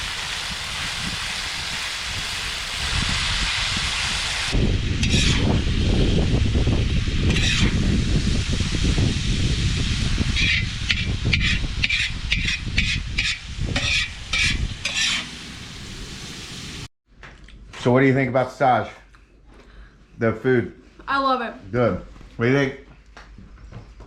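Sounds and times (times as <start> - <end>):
meat sizzling in a pan: 0.0 - 16.9
utensil scraping a metal pan: 5.0 - 5.5, 7.3 - 7.8, 10.4 - 15.4.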